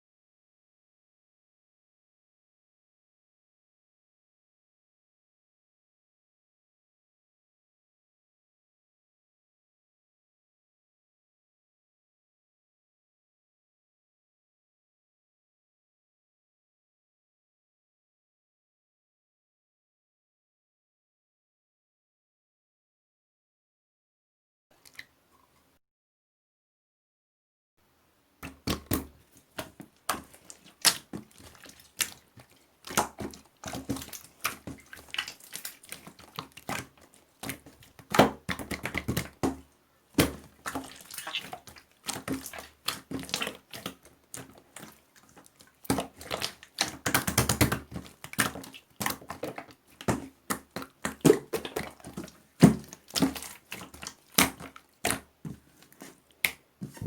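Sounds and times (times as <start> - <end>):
slime squishing with wet clicks: 28.4 - 57.0.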